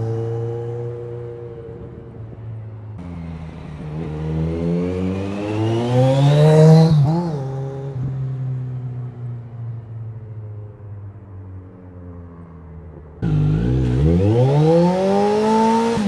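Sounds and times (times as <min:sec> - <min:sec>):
motorcycle engine revving: 0:03.0 - 0:08.2, 0:13.2 - 0:16.0.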